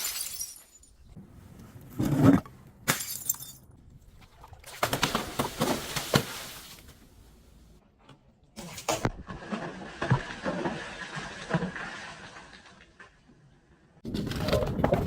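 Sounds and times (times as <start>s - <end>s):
glass smashing and crunching: 0.0s - 1.1s, 2.9s - 3.6s.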